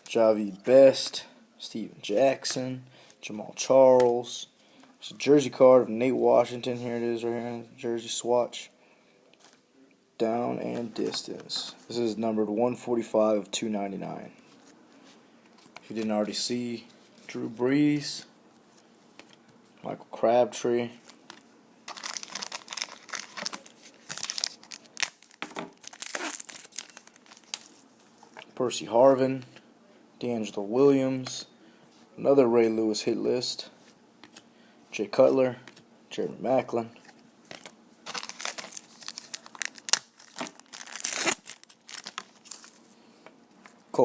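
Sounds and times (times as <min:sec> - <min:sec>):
plastic wrapper crinkling and tearing: 0:21.0 - 0:27.8, 0:37.5 - 0:42.8.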